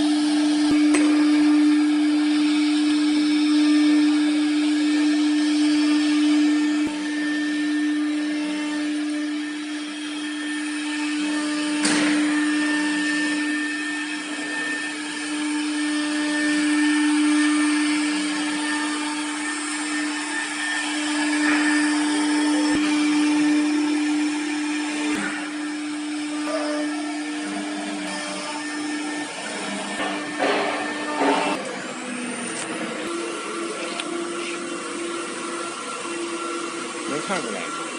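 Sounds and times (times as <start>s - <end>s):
bit cutting wood: 0.0s - 37.9s
router spindle whine: 0.0s - 37.9s.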